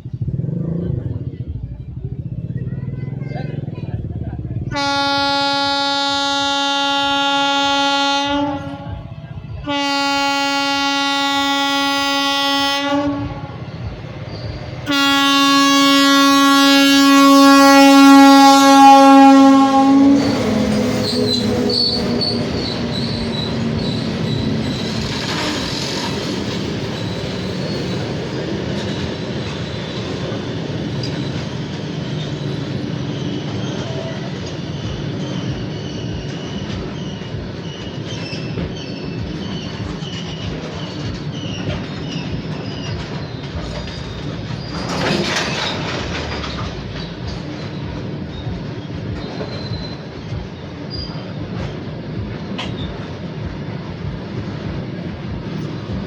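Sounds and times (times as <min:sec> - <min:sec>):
train wagons rumbling: 0:00.0 - 0:56.0
wheels clacking over rail joints: 0:12.8 - 0:56.0
wheel flanges squealing: 0:13.5 - 0:15.0, 0:19.2 - 0:56.0.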